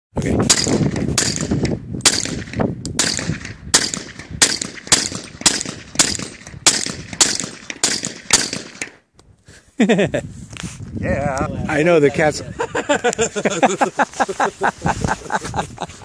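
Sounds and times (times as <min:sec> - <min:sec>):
suppressed pistol shots: 0:00.5 - 0:09.0.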